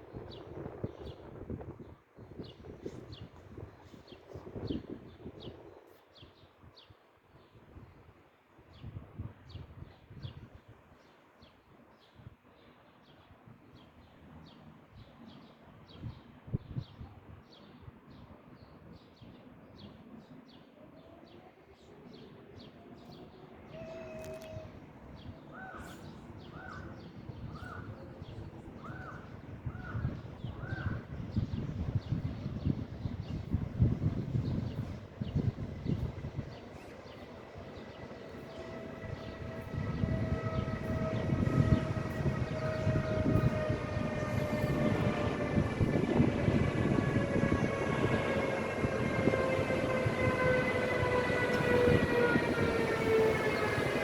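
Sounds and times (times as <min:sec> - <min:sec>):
electric locomotive whine: 0:21.4 - 0:54.0
wheels rumbling on rails: 0:30.1 - 0:54.0.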